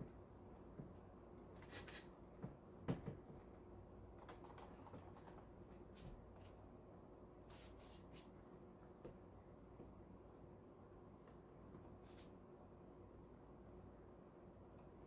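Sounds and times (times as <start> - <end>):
faint taps and knocks: 2.3 - 3.5.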